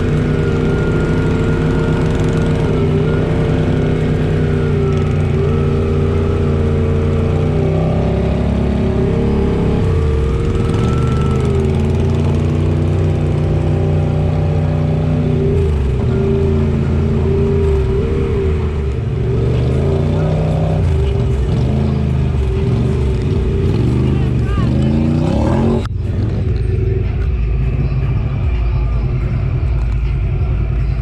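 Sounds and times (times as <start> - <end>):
utility vehicle engine running: 0.0 - 31.0.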